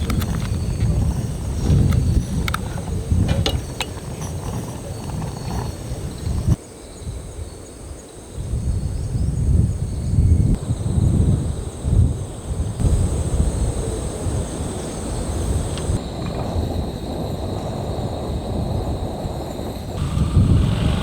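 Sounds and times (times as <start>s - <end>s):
light clicks: 0.0s - 6.6s
wind buffeting microphone: 0.0s - 21.0s.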